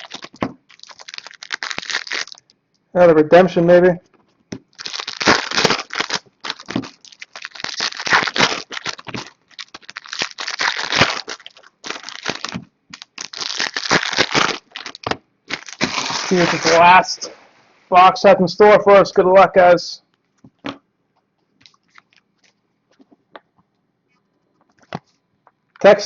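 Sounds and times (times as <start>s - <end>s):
plastic wrappers crinkling: 0.0s - 2.5s, 4.5s - 17.2s, 21.6s - 23.1s.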